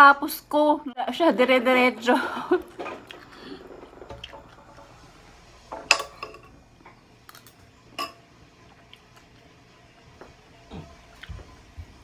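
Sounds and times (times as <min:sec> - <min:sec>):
cutlery clinking against a plate: 0:05.7 - 0:06.5, 0:07.3 - 0:08.2.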